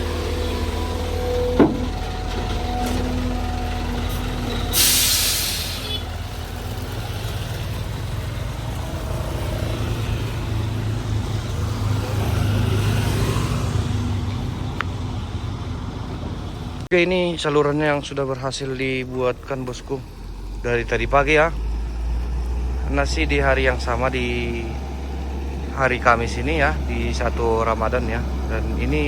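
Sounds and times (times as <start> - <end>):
heavy vehicle engine rumbling: 0.0 - 29.0
air brake hiss: 4.7 - 6.1.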